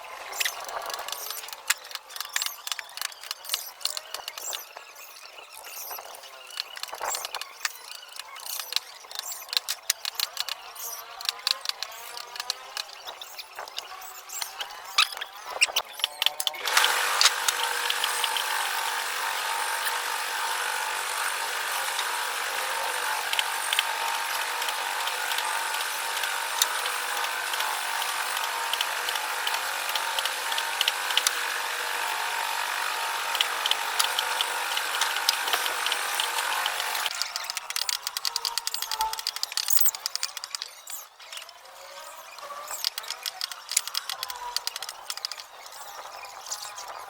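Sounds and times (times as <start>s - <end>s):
sharp clicks: 0.3s - 41.6s, 42.3s - 46.9s
woodworking power tool running: 16.5s - 40.6s.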